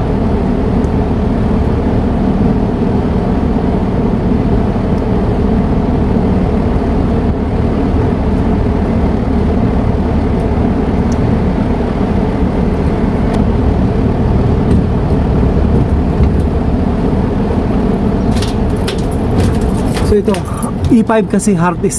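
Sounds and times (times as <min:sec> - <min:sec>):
air conditioner compressor humming: 0:00.0 - 0:21.9.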